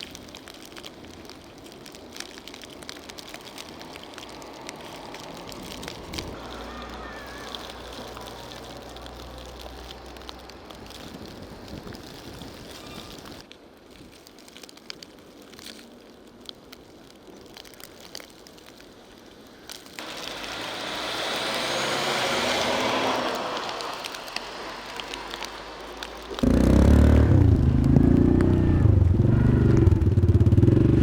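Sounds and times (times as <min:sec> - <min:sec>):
vehicle passing: 0:20.0 - 0:31.0
loud engine close by: 0:26.4 - 0:31.0.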